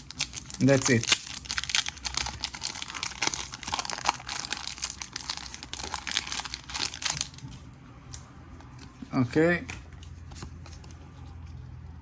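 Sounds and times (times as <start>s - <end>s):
foil wrapper crinkling: 0.0s - 7.4s.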